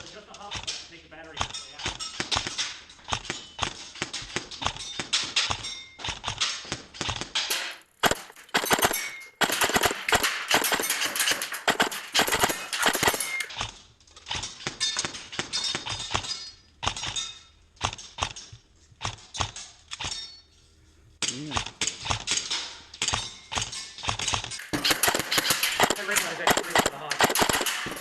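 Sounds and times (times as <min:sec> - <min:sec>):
airsoft rifle shots: 0:05.3 - 0:13.6, 0:24.1 - 0:28.0.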